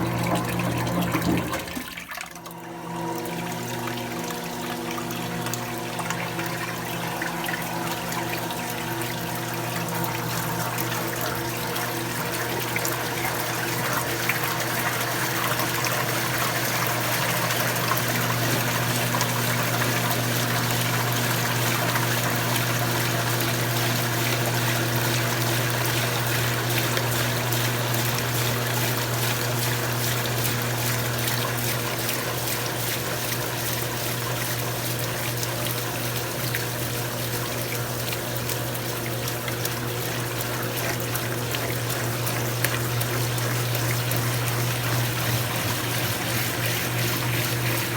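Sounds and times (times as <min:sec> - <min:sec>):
washing machine motor hum: 0:00.0 - 0:47.9
water trickling and splashing: 0:00.0 - 0:47.9.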